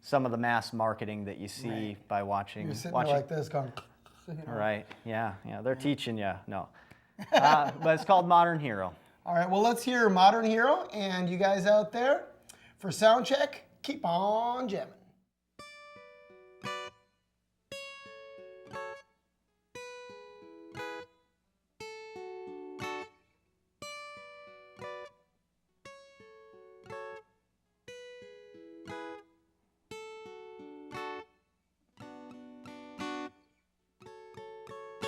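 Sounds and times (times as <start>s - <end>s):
acoustic guitar picking and strumming: 15.6s - 17.0s, 21.8s - 23.2s, 27.9s - 31.4s, 32.0s - 35.0s.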